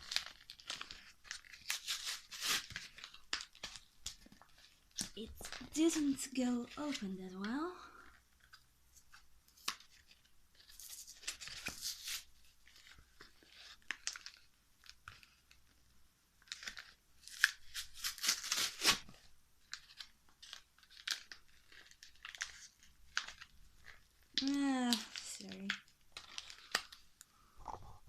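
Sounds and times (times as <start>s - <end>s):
foil wrapper tearing and crinkling: 0.0s - 7.6s, 9.6s - 15.6s, 16.4s - 27.1s.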